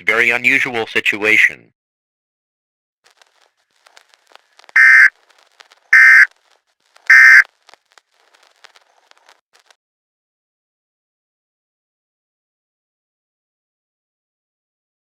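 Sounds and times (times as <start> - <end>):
faint crackling clicks: 3.1 - 9.8.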